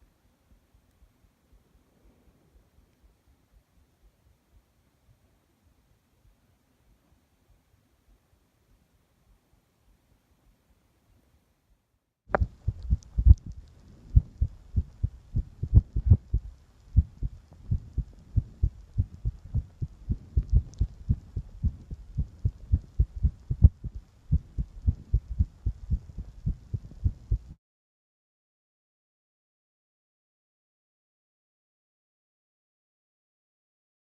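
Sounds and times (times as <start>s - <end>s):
heartbeat thumps: 12.3s - 27.6s.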